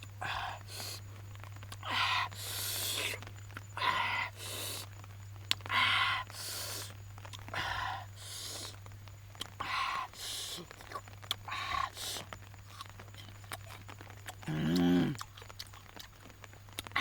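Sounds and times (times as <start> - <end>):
person breathing hard: 0.2 - 1.0, 1.8 - 3.2, 3.8 - 4.9, 5.7 - 8.8, 9.6 - 10.7, 11.5 - 12.3.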